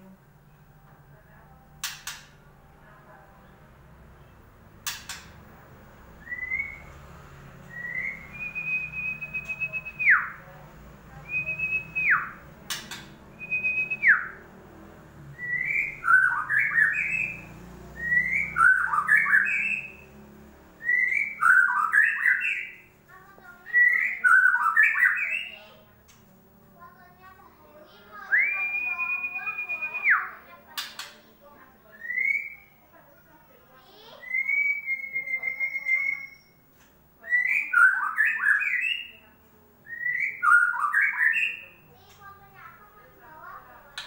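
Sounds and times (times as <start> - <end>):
sharp clicks: 1.8 - 2.4, 4.8 - 5.5, 12.7 - 13.2
bird singing whistled notes: 6.2 - 7.0, 7.7 - 10.4, 11.2 - 14.5, 15.4 - 20.2, 20.8 - 22.9, 23.6 - 25.9, 28.1 - 31.1, 31.9 - 32.8, 34.0 - 39.2, 39.8 - 42.0.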